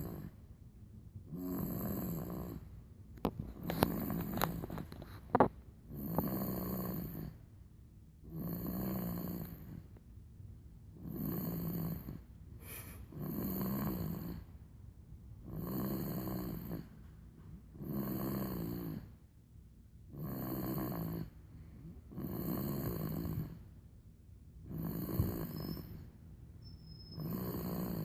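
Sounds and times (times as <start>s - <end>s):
baby snoring: 0.0s - 0.4s, 1.3s - 7.4s, 8.3s - 9.8s, 11.0s - 14.5s, 15.4s - 16.9s, 17.8s - 19.1s, 20.1s - 21.4s, 22.1s - 23.6s, 24.7s - 26.1s, 27.2s - 28.0s.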